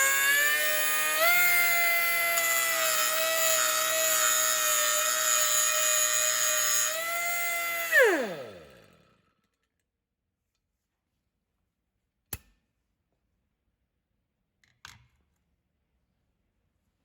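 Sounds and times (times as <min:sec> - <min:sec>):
air grinder spinning down: 0:00.0 - 0:09.2.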